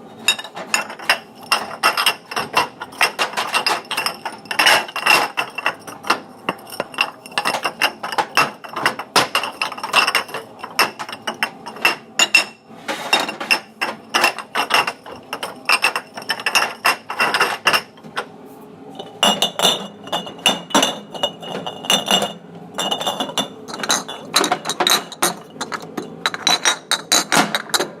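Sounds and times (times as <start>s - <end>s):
glass clinking: 0.3s - 12.6s, 13.2s - 17.9s, 19.0s - 27.9s.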